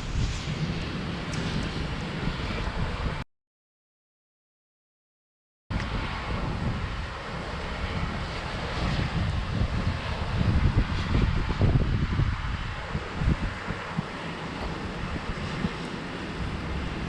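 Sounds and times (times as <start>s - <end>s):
wind buffeting microphone: 0.0s - 3.2s, 5.7s - 17.0s.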